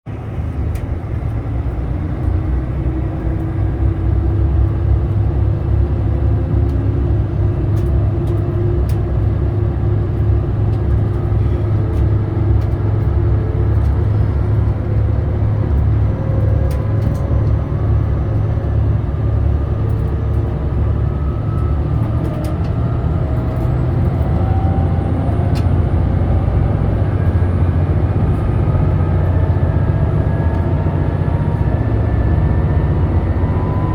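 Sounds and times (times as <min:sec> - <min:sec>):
railcar diesel engine rumble: 0:00.1 - 0:33.9
rising whine: 0:11.1 - 0:33.9.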